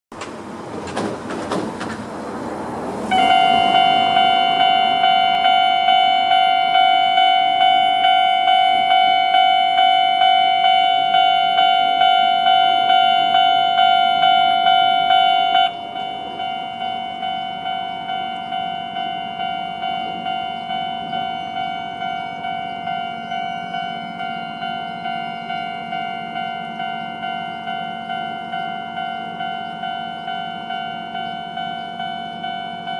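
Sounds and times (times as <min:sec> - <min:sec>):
clunks: 0:00.1 - 0:02.2
rushing noise: 0:00.2 - 0:09.0
level crossing alarm ringing: 0:03.0 - 0:32.9.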